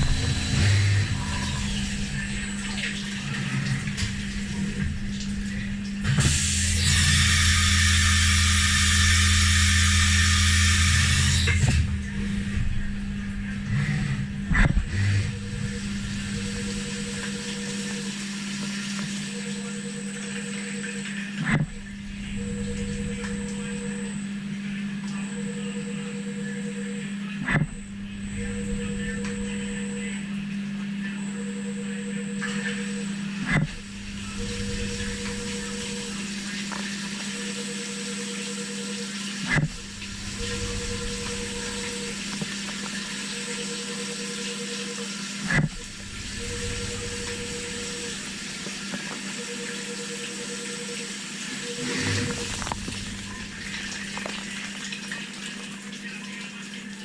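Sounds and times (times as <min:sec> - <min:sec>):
milling machine hum: 0:00.0 - 0:57.0
pulsing tone: 0:06.7 - 0:18.1, 0:21.7 - 0:24.3, 0:27.6 - 0:30.3, 0:31.2 - 0:54.7.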